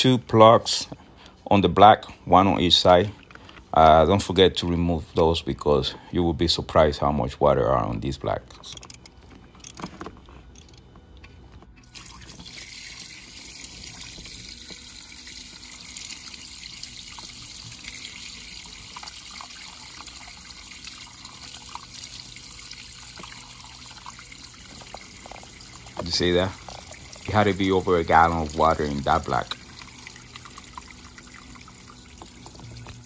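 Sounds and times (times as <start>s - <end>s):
water trickling from drain hole: 11.9s - 33.0s.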